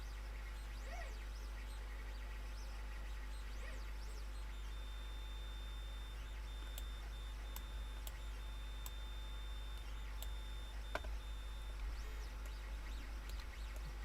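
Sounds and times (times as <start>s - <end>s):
faint high-pitched whine: 0.0s - 14.0s
low electrical hum: 0.0s - 14.0s
computer mouse clicking: 6.5s - 14.0s.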